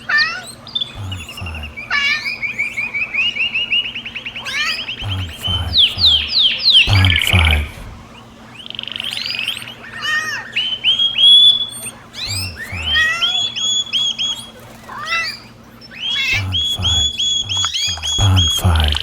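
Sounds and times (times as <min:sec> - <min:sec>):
bird chirping and whistling: 0:15.3 - 0:18.0.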